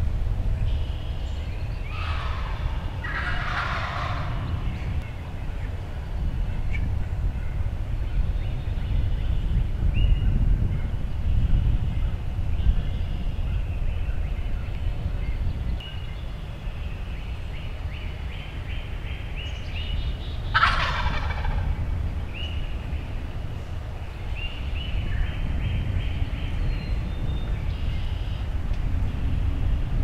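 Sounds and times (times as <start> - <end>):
steady low rumble: 0.0 - 30.0
turkey gobbling: 2.0 - 4.5, 20.5 - 21.7.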